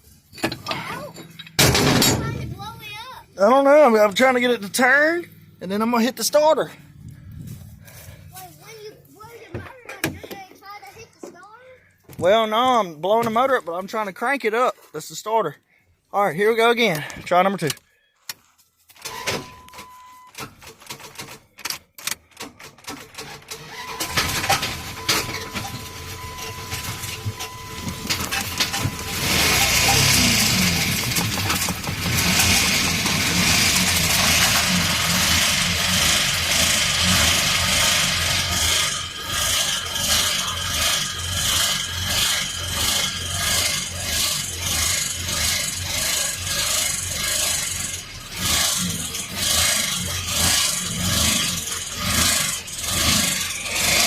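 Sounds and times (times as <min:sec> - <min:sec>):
starter cranking engine: 0:20.4 - 0:54.0.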